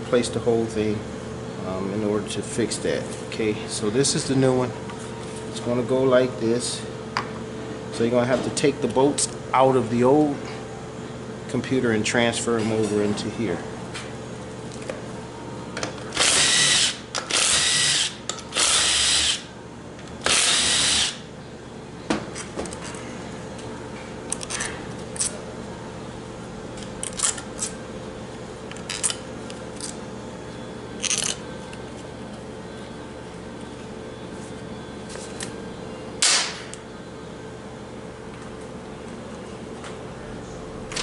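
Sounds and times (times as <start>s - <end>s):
power drill spinning: 16.2s - 19.4s, 20.3s - 21.2s.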